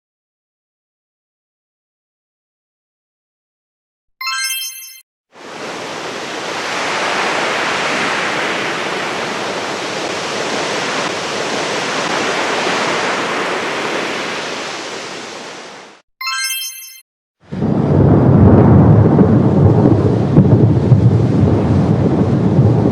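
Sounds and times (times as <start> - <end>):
rushing water: 5.4 - 17.0.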